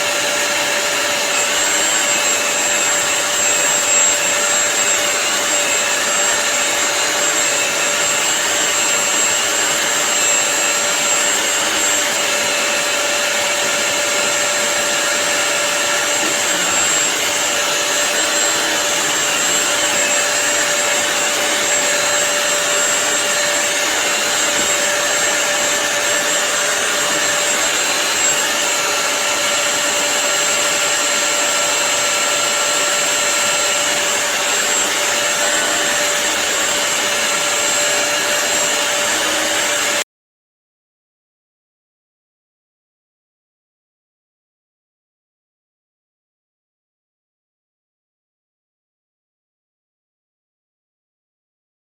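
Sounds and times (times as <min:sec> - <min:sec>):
vacuum cleaner running: 0:00.0 - 0:40.0.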